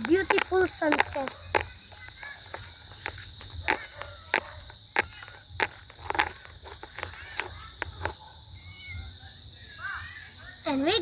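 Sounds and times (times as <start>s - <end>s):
footsteps walking: 0.0s - 8.3s
high-pitched insect trill: 0.0s - 11.0s.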